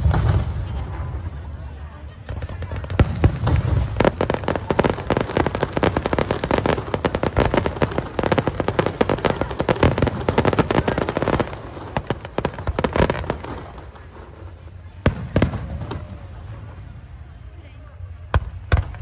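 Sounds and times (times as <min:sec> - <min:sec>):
firework boom: 0:00.0 - 0:01.5
fireworks crackling: 0:00.0 - 0:19.0.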